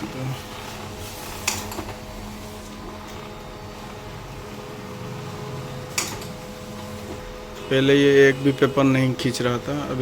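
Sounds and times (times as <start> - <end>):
printer motor hum: 0.0 - 10.0.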